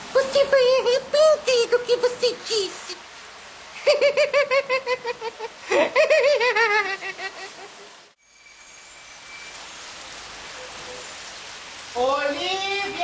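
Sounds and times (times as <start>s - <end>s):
steady rain hiss: 0.0s - 13.0s
high-pitched villain laugh: 3.8s - 8.0s.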